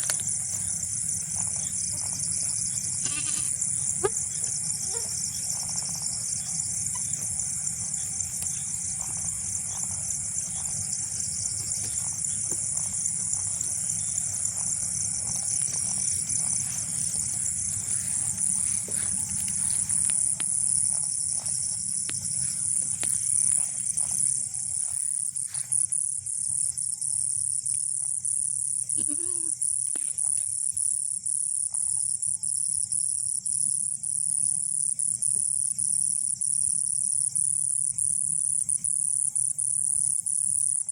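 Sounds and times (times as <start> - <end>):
insects chorus: 0.0 - 40.9
goat bleat: 3.0 - 4.2, 28.9 - 29.6.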